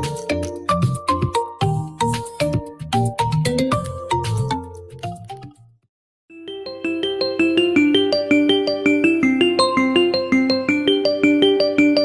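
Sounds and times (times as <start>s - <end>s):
smartphone ringtone melody: 6.3s - 12.0s.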